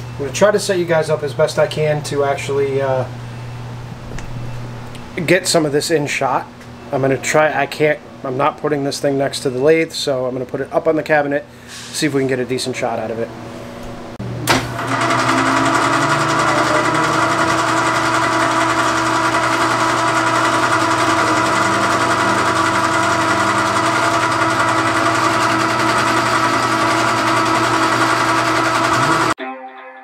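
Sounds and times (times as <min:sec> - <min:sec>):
metal lathe whining: 0:14.2 - 0:29.4.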